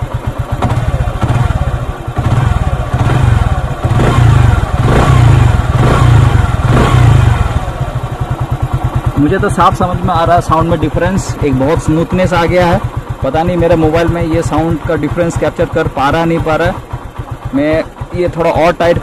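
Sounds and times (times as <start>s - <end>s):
motorcycle engine revving: 0.0s - 19.0s.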